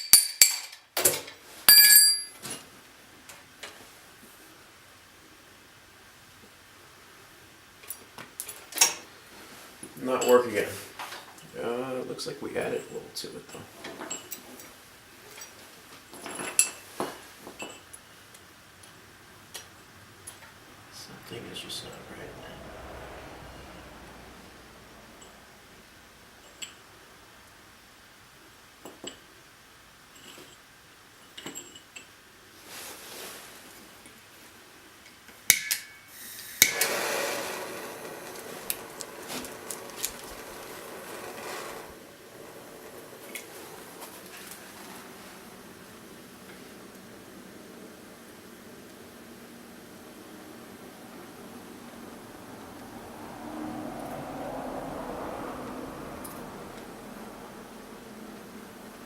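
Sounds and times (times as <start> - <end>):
metallic clinks of tools: 0.0 - 2.4
torch flame hissing: 36.1 - 47.0.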